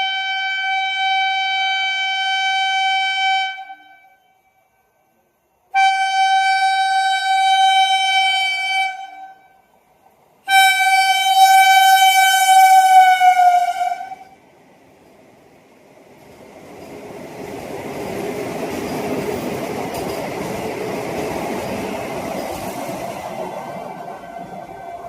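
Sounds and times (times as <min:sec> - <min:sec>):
locomotive horn blasts: 0:05.7 - 0:09.6, 0:10.5 - 0:14.3.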